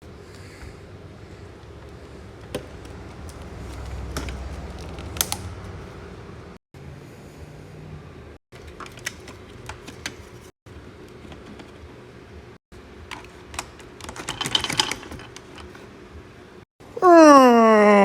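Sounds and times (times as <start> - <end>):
plastic parts clicking and knocking: 1.8 - 5.5, 8.6 - 10.5, 13.0 - 15.8.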